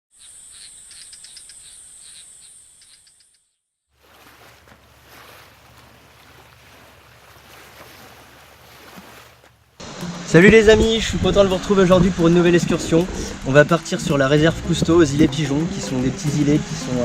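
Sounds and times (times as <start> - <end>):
bird chirps: 0.1 - 3.6
high-pitched insect drone: 0.2 - 3.4
low hum: 9.6 - 15.8
steady rushing noise: 9.8 - 17.0.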